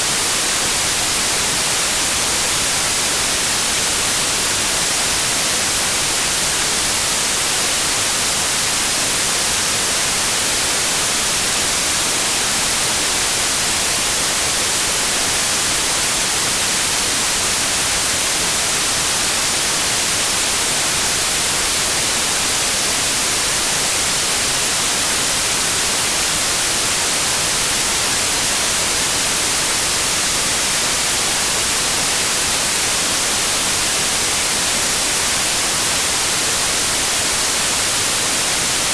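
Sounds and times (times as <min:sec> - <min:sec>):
white noise hiss: 0:00.0 - 0:38.9.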